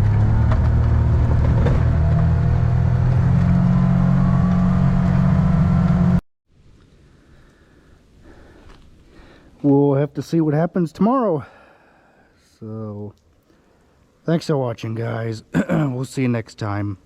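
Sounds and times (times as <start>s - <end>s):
vehicle engine driving off: 0.0s - 6.2s.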